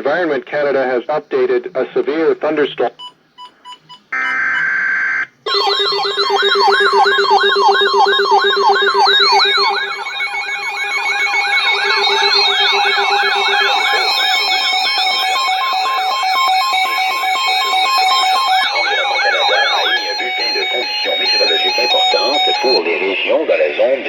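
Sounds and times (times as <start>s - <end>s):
short beeps: 5.5s - 22.8s
steady alert tones: 5.5s - 22.8s
warbling siren-like tone: 5.5s - 22.8s.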